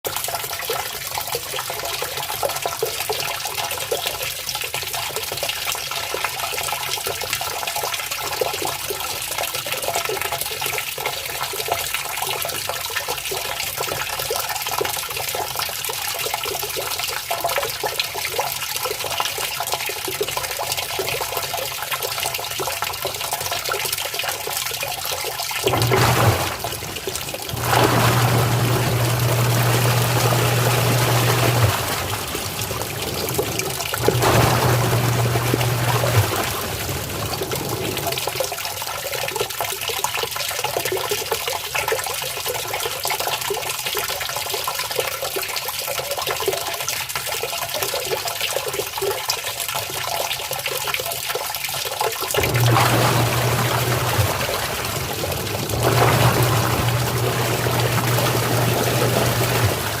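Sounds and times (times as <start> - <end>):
water splashing in washing machine: 0.0 - 60.0
low electric hum: 52.4 - 60.0.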